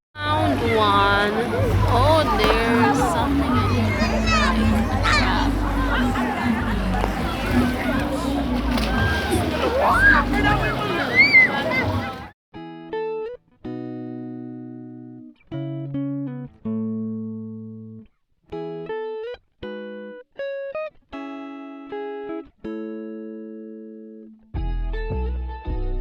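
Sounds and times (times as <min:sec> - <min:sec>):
clean guitar slow chords: 0:00.2 - 0:11.0.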